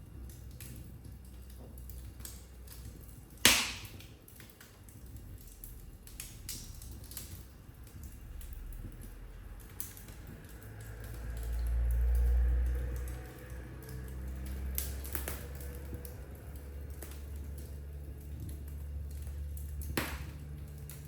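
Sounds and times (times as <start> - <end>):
wood fire crackling: 0.0 - 21.0
loud pop of fire: 3.4 - 4.2, 19.8 - 20.4.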